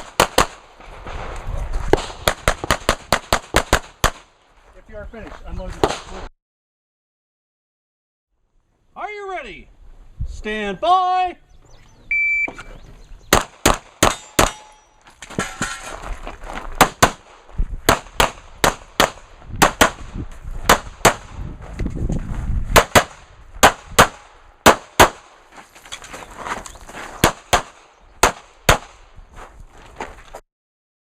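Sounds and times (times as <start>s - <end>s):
pistol shots: 0.0s - 0.6s, 2.0s - 4.3s, 13.3s - 14.8s, 16.8s - 20.1s, 22.8s - 25.4s, 27.2s - 29.0s
start beep: 12.1s - 12.8s.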